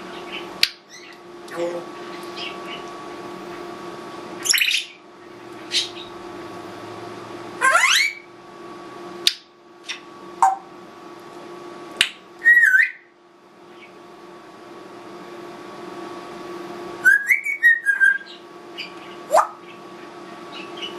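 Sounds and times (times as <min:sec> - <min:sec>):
parrot whistling: 0:04.4 - 0:05.0, 0:07.6 - 0:08.3, 0:12.4 - 0:13.1, 0:17.0 - 0:19.6.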